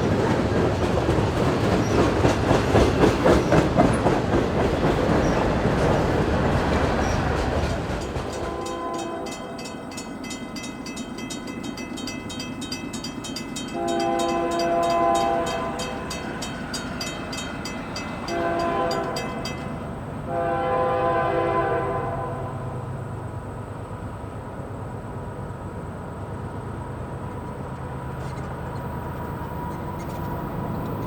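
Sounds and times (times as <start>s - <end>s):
train rumble: 0.0s - 31.0s
locomotive air horn blasts: 8.3s - 9.7s, 13.7s - 16.4s, 18.2s - 22.9s.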